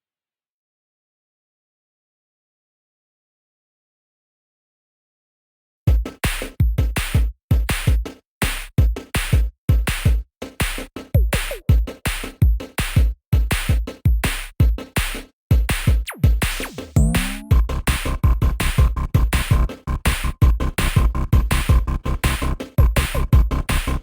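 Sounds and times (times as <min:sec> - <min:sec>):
electronic music with heavy bass: 0:10.0 - 0:24.0.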